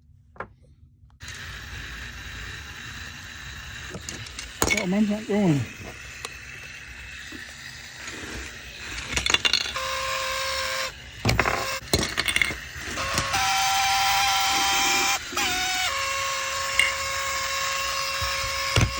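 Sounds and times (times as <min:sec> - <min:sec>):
toy motors whining: 0:01.2 - 0:18.9
plastic bricks clattering: 0:03.8 - 0:13.4, 0:16.6 - 0:17.3.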